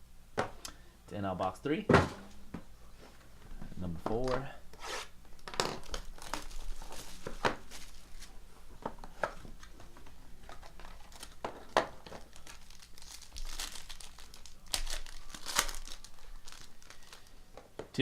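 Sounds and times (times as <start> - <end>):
plastic wrapping crinkling and tearing: 5.4 - 8.4, 10.5 - 17.4.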